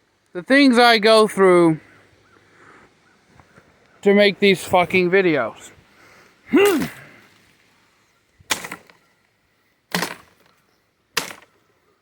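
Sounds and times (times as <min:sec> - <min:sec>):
person shouting: 0:06.5 - 0:07.0
sword chopping a target: 0:08.5 - 0:09.0, 0:09.9 - 0:10.4, 0:11.2 - 0:11.5.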